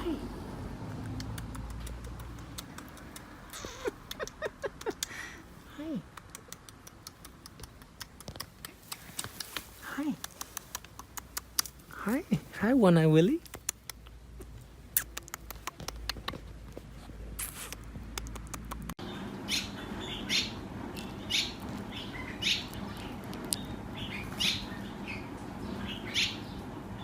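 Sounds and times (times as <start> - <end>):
low steady hum: 0.0 - 27.0
sharp clicks and taps: 1.0 - 5.2, 6.1 - 11.8, 13.4 - 16.8, 17.4 - 19.0
bird chirping: 19.0 - 27.0.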